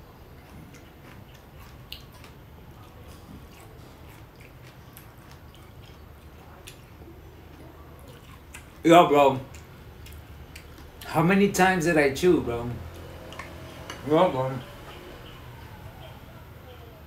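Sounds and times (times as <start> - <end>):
person chewing crunchy seeds: 0.0 - 11.1
low steady hum: 0.0 - 17.0.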